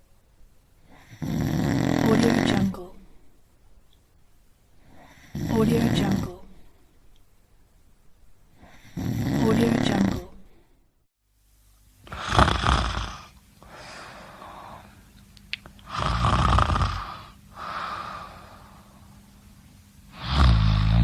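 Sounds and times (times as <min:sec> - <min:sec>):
person snoring: 0:00.9 - 0:02.8, 0:04.8 - 0:06.4, 0:08.6 - 0:10.3, 0:12.0 - 0:15.0, 0:15.8 - 0:19.1, 0:20.1 - 0:21.0
soft breath: 0:13.1 - 0:15.1, 0:16.9 - 0:19.3.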